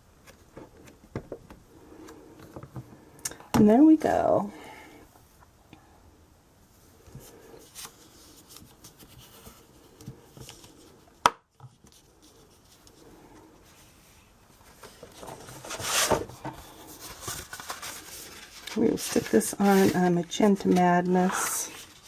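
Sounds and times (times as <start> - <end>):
paper rustling: 14.6 - 22.0.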